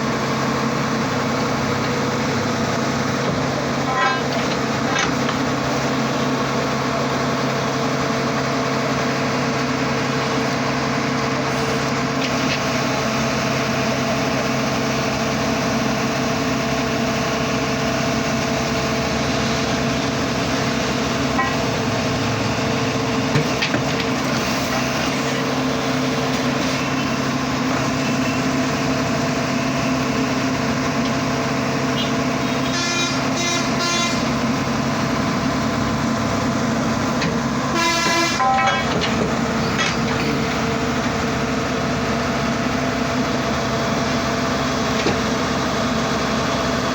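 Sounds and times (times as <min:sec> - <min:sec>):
drilling machine engine running: 0:00.0 - 0:46.9
vehicle horn: 0:32.0 - 0:34.4, 0:37.7 - 0:38.9.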